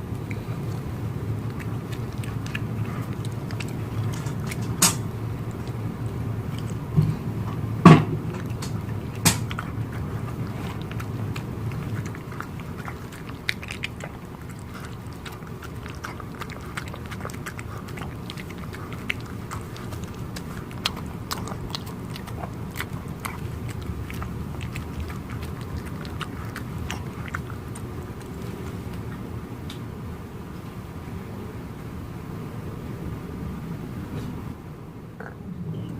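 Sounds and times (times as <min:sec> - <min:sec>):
dogs chewing wetly: 0:00.0 - 0:31.0
low background noise: 0:00.0 - 0:35.9.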